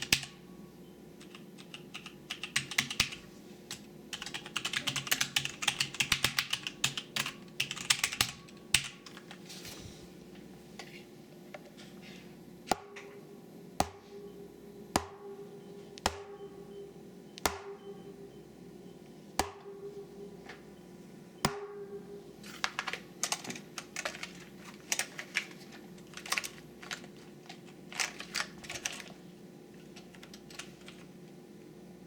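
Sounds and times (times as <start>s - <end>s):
typing on mechanical keyboard: 0.0s - 0.4s, 1.2s - 9.4s, 22.7s - 29.2s.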